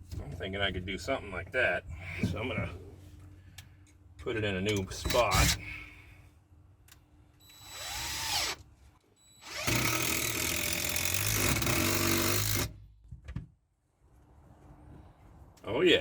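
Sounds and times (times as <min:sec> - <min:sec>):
power drill running: 0:07.6 - 0:08.6, 0:09.4 - 0:12.7.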